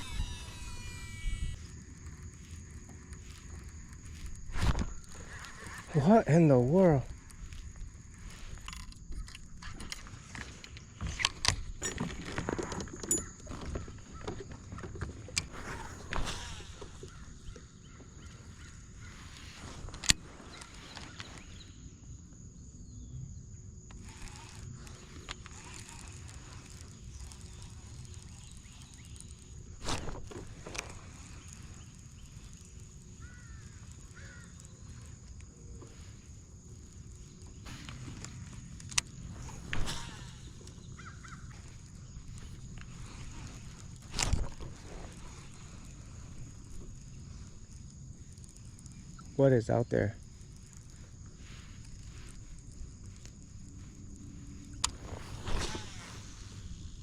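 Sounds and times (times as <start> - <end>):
knocks clicks and rattles in kayak: 0.0 - 18.5, 23.9 - 36.0.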